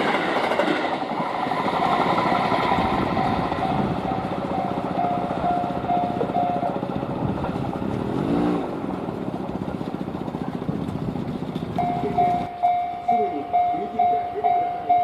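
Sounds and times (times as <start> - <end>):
level crossing warning bell dinging: 3.1 - 6.8, 11.8 - 15.0
vehicle rumble: 3.2 - 14.6.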